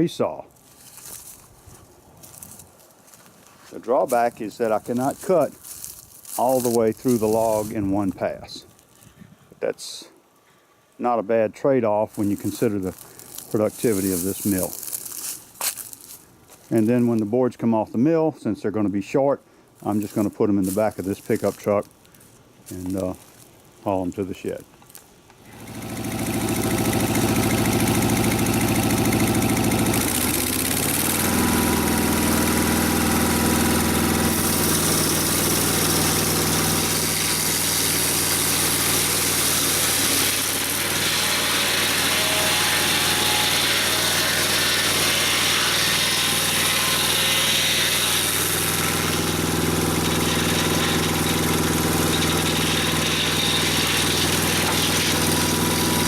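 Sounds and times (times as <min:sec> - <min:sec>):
engine running: 0:25.4 - 0:56.0.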